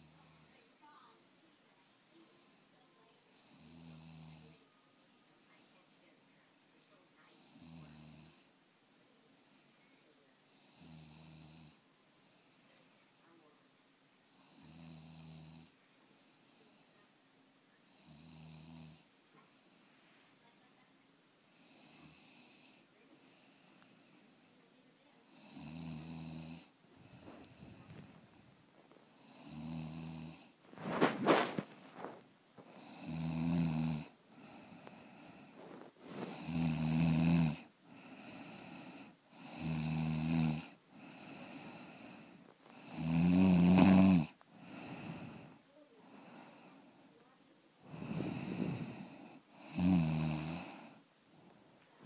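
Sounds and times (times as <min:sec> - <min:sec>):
soft breathing: 0:11.7 - 0:13.6, 0:15.7 - 0:17.3, 0:19.0 - 0:20.9, 0:21.5 - 0:36.8, 0:37.5 - 0:39.6, 0:40.6 - 0:52.0
loud low buzzing snore: 0:25.4 - 0:26.7, 0:29.3 - 0:30.5, 0:32.8 - 0:35.5, 0:36.3 - 0:45.5, 0:47.9 - 0:51.0.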